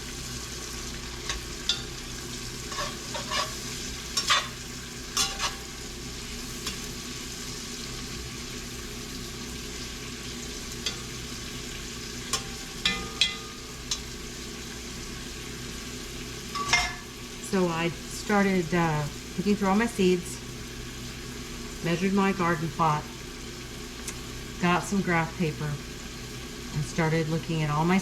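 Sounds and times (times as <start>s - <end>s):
leeks sizzling in a pot: 0.0s - 28.0s
spoon stirring and clinking on pot: 1.2s - 2.0s, 2.7s - 3.6s, 4.2s - 4.6s, 5.2s - 5.7s, 12.3s - 14.1s, 16.5s - 17.0s.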